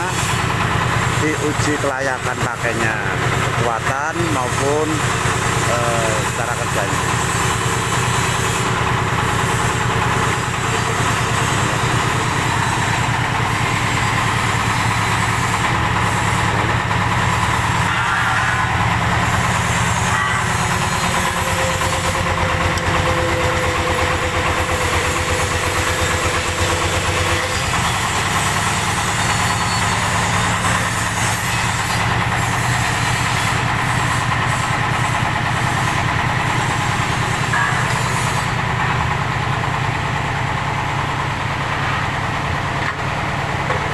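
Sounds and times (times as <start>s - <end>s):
block machine engine running: 0.0s - 31.0s.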